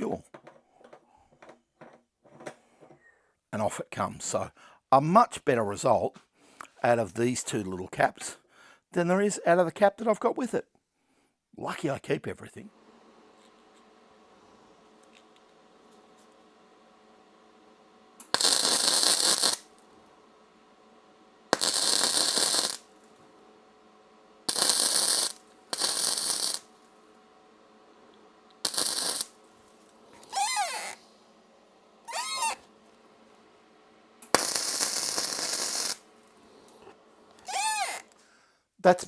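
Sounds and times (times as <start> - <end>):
welder crackling: 12.8 - 33.6, 34.2 - 38.2
short wavering squeals: 30.2 - 31.1, 32.0 - 32.6, 37.4 - 38.2.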